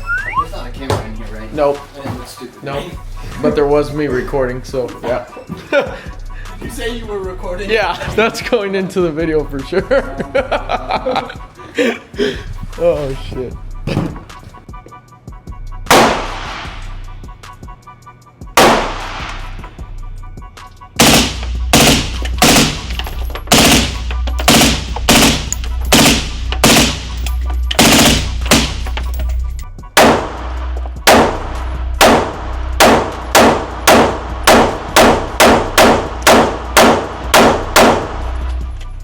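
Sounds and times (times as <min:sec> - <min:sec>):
gunshots ringing indoors: 0:15.9 - 0:16.8, 0:18.6 - 0:19.5, 0:21.0 - 0:27.2, 0:27.8 - 0:28.9, 0:30.0 - 0:38.4.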